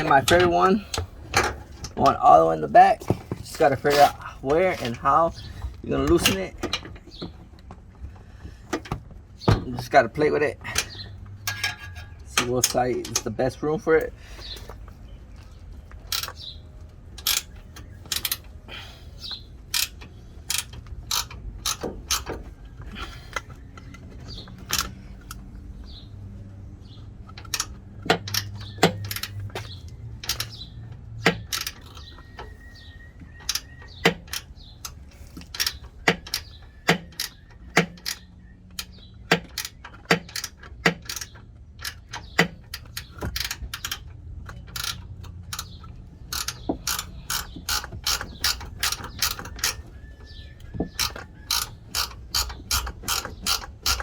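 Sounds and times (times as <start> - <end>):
ratchet wrench clicking: 17.2 - 18.4, 19.7 - 22.3, 27.4 - 30.6, 33.5 - 49.8, 50.9 - 54.0.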